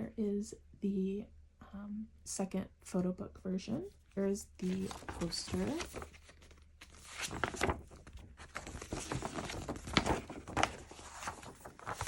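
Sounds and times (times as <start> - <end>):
paper poster rustling: 4.4 - 12.0.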